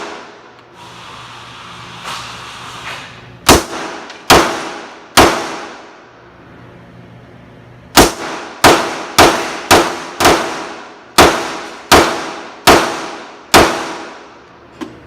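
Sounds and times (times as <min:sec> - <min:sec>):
gunshots: 0:00.0 - 0:00.5, 0:03.5 - 0:05.9, 0:08.0 - 0:14.3.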